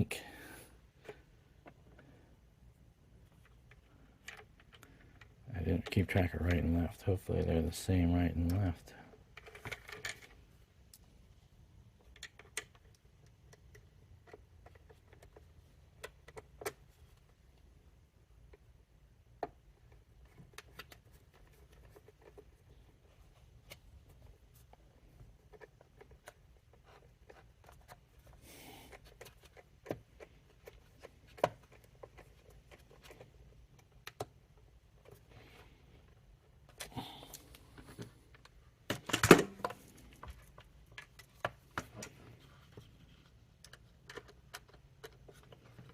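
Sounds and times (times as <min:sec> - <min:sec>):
plastic parts clicking and knocking: 0:03.1 - 0:07.8, 0:08.4 - 0:45.9
plastic parts clattering: 0:36.6 - 0:45.9.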